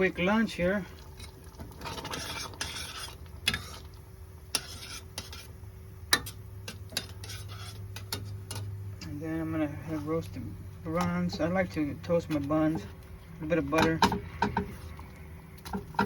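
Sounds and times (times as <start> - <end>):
steady low hum: 0.0 - 16.0
scraping rustle: 6.9 - 8.4
dishes clicking and clinking: 15.6 - 16.0.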